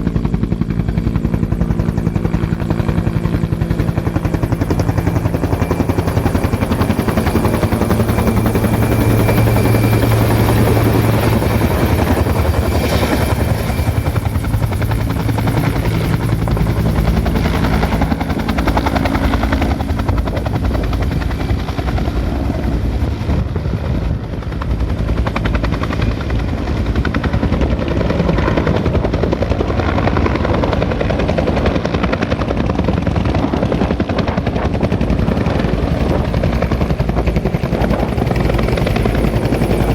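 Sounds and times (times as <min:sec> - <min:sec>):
turbine hum: 0:00.0 - 0:23.5
helicopter rotor chop: 0:00.0 - 0:39.9.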